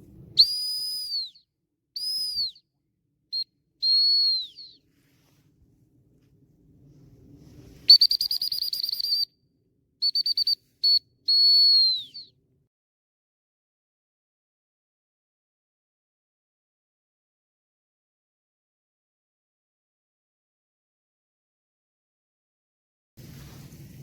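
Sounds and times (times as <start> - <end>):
whistle blown in high notes: 0.4 - 1.4, 2.0 - 2.6, 3.8 - 4.8, 7.9 - 9.3, 10.0 - 12.3.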